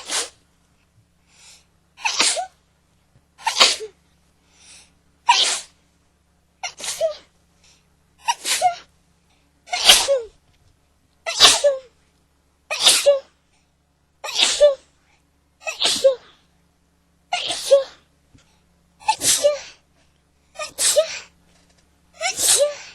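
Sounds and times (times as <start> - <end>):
person sneezing: 0.0 - 0.4, 2.0 - 2.6, 3.4 - 4.0, 5.3 - 5.8, 6.6 - 7.3, 8.2 - 8.9, 9.7 - 10.3, 11.3 - 11.9, 12.7 - 13.3, 14.2 - 14.9, 15.6 - 16.4, 17.3 - 18.1, 19.0 - 19.8, 20.6 - 21.3, 22.2 - 22.9.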